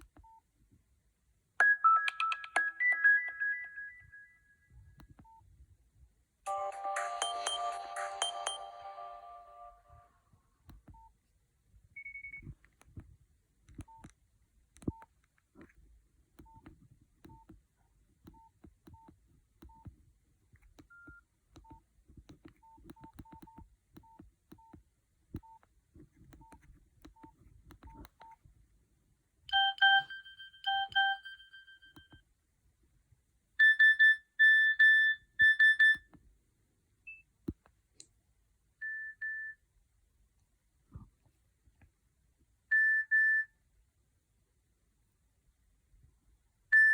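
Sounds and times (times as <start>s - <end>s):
electronic phone beeps: 1.6s - 4.1s, 12.0s - 12.5s, 29.5s - 32.2s, 33.6s - 36.1s
keypad clicks: 13.7s - 14.2s, 14.8s - 15.8s, 18.2s - 28.4s.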